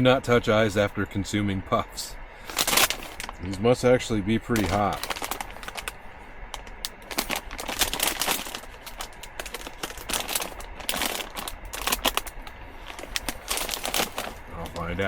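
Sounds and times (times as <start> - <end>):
plastic snack bag crinkling: 2.5 - 3.7, 4.5 - 6.0, 6.6 - 15.0.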